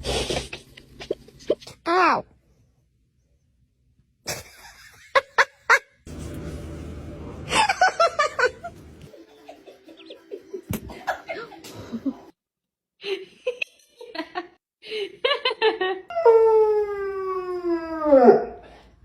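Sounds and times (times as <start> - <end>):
people laughing: 7.5 - 12.3.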